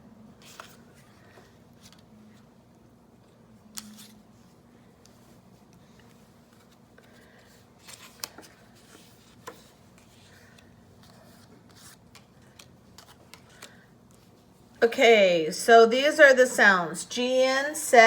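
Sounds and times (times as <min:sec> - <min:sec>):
paper cards rustling and scraping: 0:00.4 - 0:02.5, 0:03.2 - 0:14.5.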